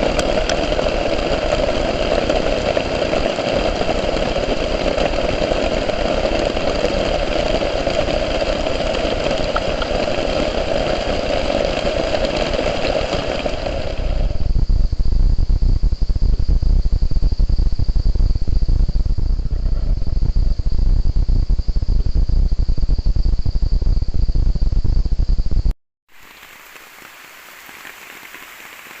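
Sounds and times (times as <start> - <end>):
insects trilling: 0.0 - 25.4, 26.1 - 29.0
crackling low rumble: 0.0 - 29.0
steady hiss: 26.1 - 29.0.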